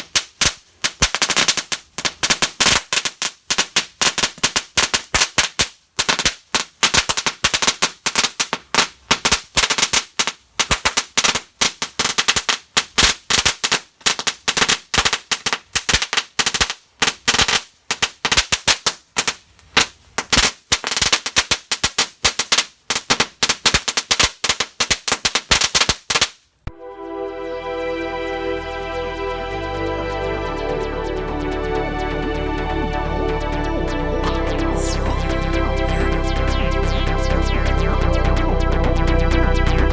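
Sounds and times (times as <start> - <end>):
background music: 26.7 - 39.9.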